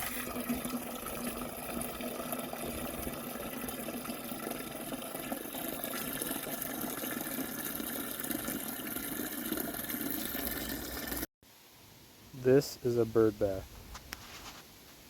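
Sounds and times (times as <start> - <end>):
water running into container: 0.0 - 11.3.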